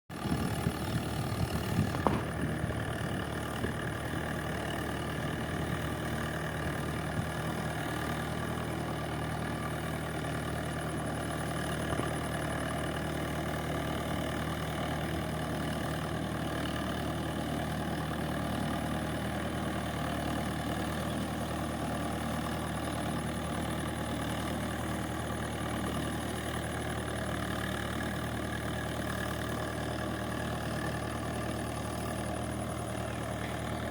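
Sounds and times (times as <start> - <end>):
tractor diesel engine running: 0.1 - 33.9
sharp knocks: 1.8 - 2.6.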